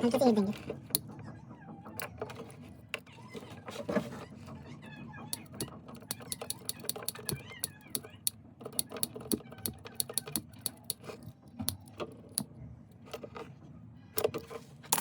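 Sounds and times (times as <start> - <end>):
clicks and taps of tools: 5.4 - 12.4.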